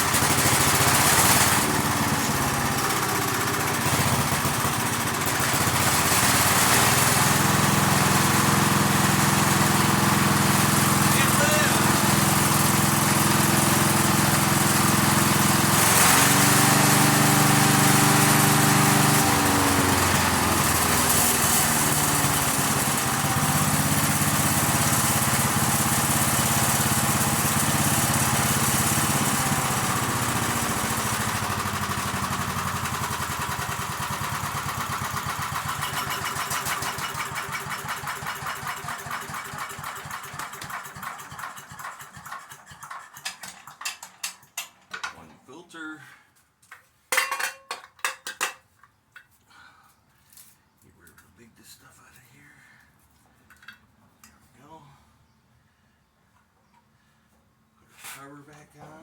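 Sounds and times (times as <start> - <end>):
small engine running: 0.0 - 44.1.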